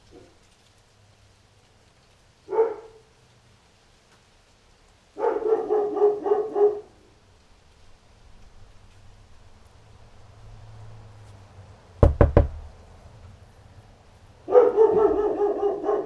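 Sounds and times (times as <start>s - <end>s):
dog barking: 2.5s - 3.1s, 5.2s - 7.0s, 14.4s - 16.0s.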